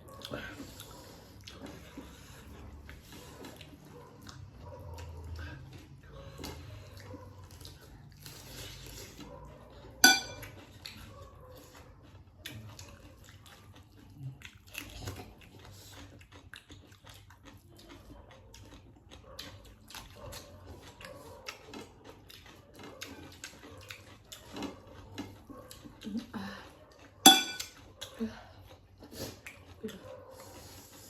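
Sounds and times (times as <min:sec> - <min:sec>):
plates and utensils clinking: 0:10.0 - 0:10.4, 0:27.3 - 0:27.8.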